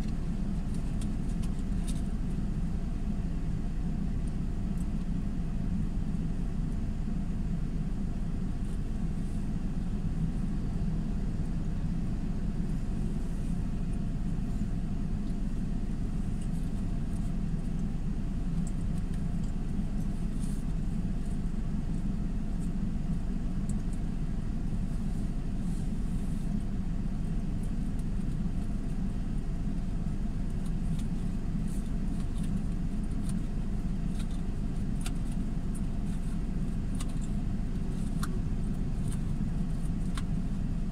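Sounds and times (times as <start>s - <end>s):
motor vehicle low rumble: 0.0s - 40.9s.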